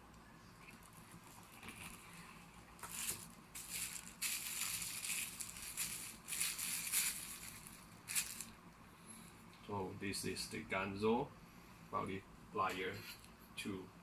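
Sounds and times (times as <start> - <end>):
pouch rustling and crinkling: 2.8 - 8.5.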